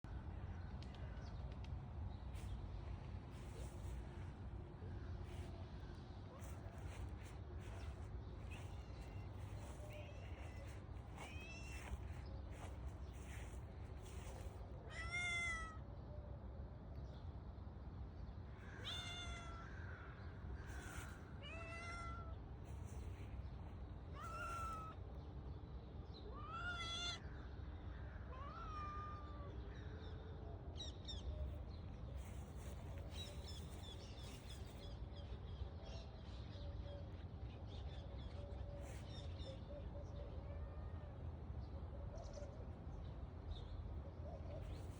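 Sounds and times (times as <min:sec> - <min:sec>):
steady low rumble: 0:00.0 - 0:14.8
cat meowing: 0:14.9 - 0:15.8, 0:18.8 - 0:19.6, 0:21.4 - 0:22.3, 0:24.2 - 0:25.0.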